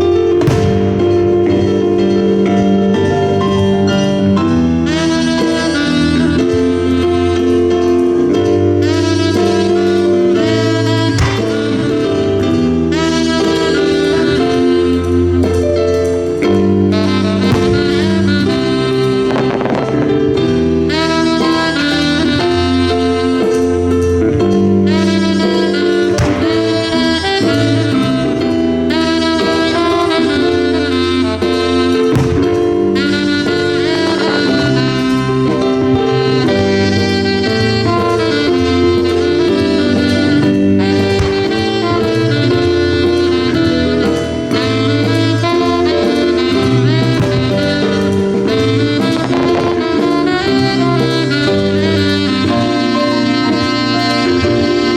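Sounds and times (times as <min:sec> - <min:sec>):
live jazz band playing: 0:00.0 - 0:54.9
walking bass: 0:00.0 - 0:54.9
sharp cracks: 0:00.3 - 0:04.6.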